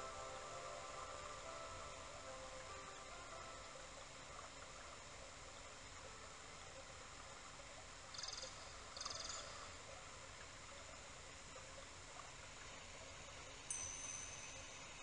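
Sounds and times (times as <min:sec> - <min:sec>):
faint steady hiss: 0:00.0 - 0:15.0
high ringing tone: 0:13.7 - 0:15.0.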